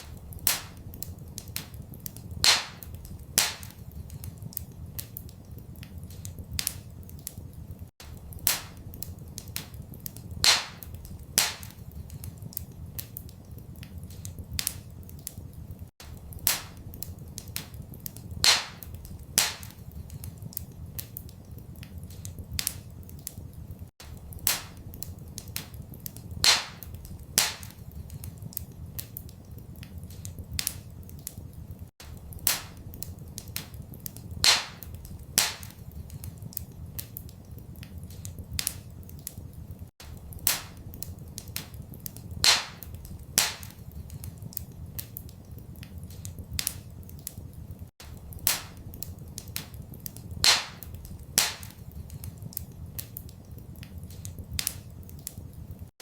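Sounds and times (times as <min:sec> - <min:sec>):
loud fire pops: 0:00.0 - 0:05.4, 0:08.0 - 0:13.3, 0:16.0 - 0:21.3, 0:24.0 - 0:29.3, 0:32.0 - 0:37.3, 0:40.0 - 0:45.3, 0:48.0 - 0:53.3
wood fire crackling: 0:00.0 - 0:56.0.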